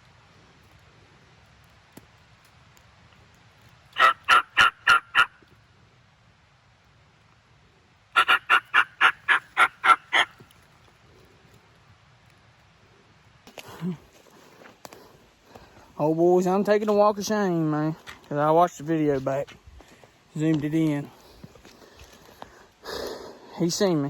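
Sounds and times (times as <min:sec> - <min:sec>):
wild turkey yelping: 0:04.0 - 0:05.5, 0:08.2 - 0:10.5.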